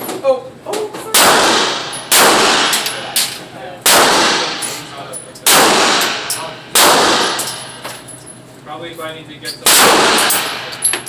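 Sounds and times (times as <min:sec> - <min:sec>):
pistol shots with echo: 0:01.1 - 0:03.2, 0:03.8 - 0:04.8, 0:05.4 - 0:07.8, 0:09.6 - 0:10.8.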